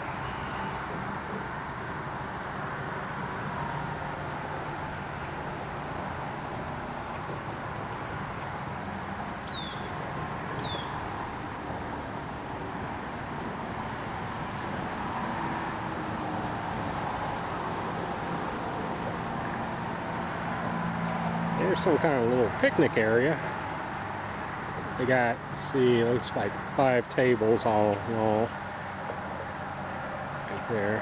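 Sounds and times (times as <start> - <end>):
road traffic noise: 0.0 - 31.0
bird chirping: 9.5 - 9.9, 10.6 - 11.0.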